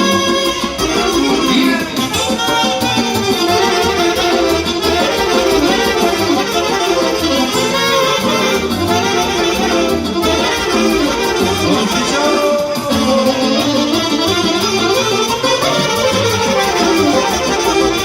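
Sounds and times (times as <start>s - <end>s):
accordion playing quick melody: 0.0s - 18.0s
band with bass and steady beat: 0.0s - 18.0s.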